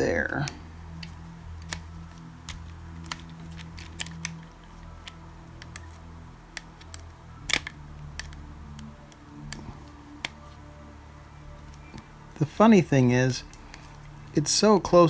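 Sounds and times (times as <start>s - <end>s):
screwdriver clicking: 2.5s - 6.0s, 6.6s - 8.9s.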